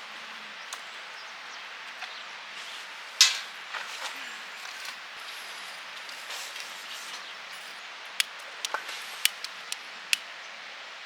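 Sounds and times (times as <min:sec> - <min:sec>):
outdoor background hiss: 0:00.0 - 0:11.0
sharp clicks: 0:08.2 - 0:10.3.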